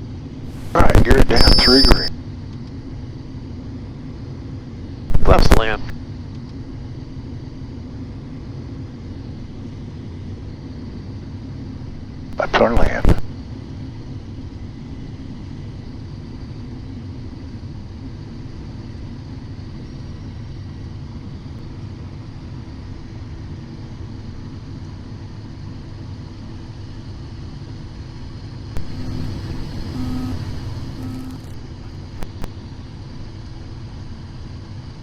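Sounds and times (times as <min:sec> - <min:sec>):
faint steady tones: 0:00.4 - 0:02.1, 0:28.8 - 0:32.5.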